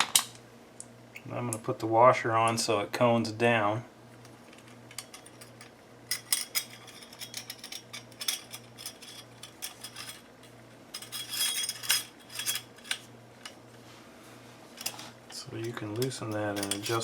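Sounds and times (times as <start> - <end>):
small metal parts clinking: 4.6 - 13.0, 15.6 - 17.0.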